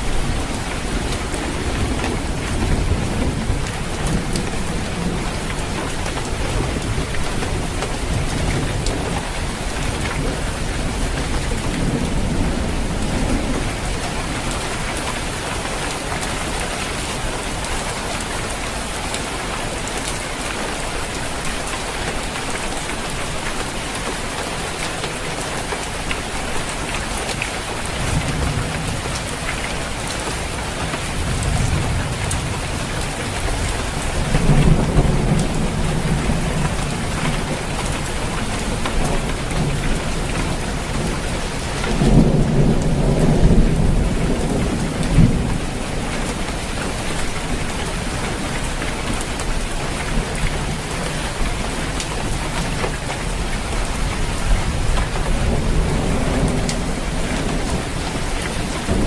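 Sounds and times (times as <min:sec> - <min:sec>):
thunder rumbling: 0:00.0 - 0:15.4, 0:27.6 - 0:48.9, 0:50.0 - 0:59.0
rain falling on a roof: 0:00.0 - 0:59.0.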